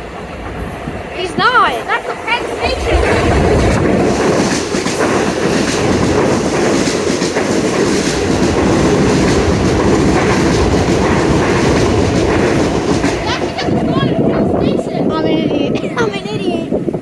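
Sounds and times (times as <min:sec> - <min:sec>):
train passing at speed: 0:00.0 - 0:17.0
wheels clicking over rail joints: 0:01.2 - 0:14.8.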